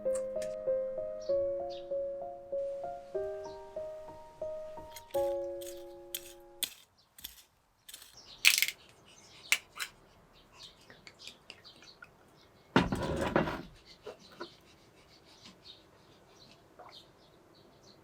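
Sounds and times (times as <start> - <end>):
background music: 0.0 - 6.8
clinks and knocks of handling: 4.9 - 8.9.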